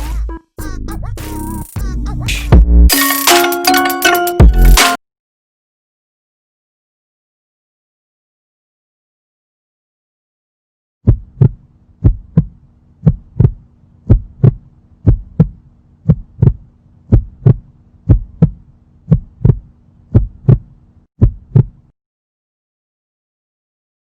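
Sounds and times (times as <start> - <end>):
heartbeat thumps: 11.0 - 21.8
steady low hum: 11.1 - 21.9.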